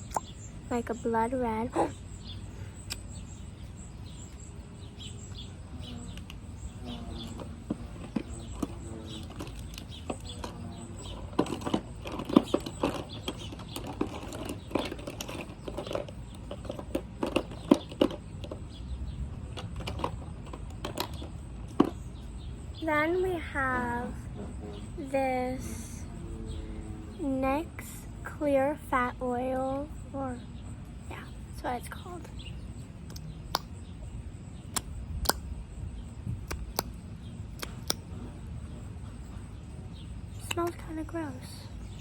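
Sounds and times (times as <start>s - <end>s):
low steady hum: 0.0s - 42.0s.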